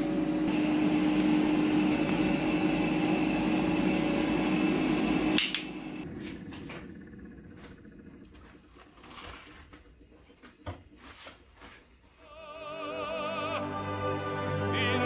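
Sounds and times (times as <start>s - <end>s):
air fryer fan humming: 0.0s - 13.2s
air fryer click: 5.3s - 5.8s.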